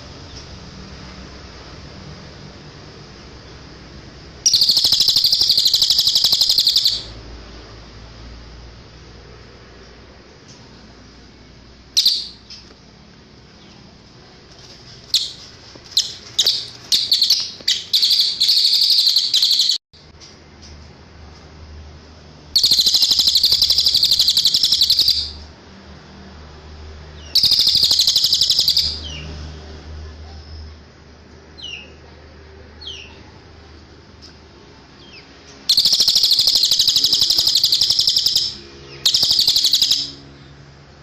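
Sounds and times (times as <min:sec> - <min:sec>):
songbird singing rapid trills: 0:04.5 - 0:07.2, 0:12.0 - 0:12.7, 0:15.1 - 0:19.8, 0:22.6 - 0:25.4, 0:27.2 - 0:29.3, 0:35.0 - 0:40.6.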